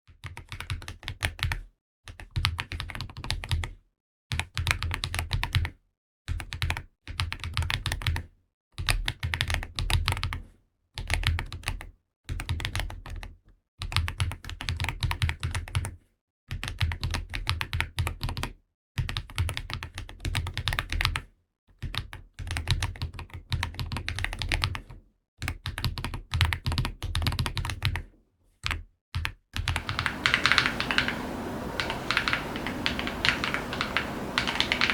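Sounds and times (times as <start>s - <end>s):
mechanical keyboard typing: 29.7s - 34.9s.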